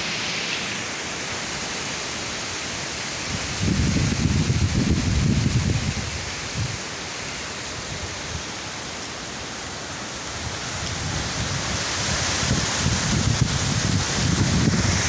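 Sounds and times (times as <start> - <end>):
wind buffeting microphone: 3.3 - 6.8, 10.4 - 15.0.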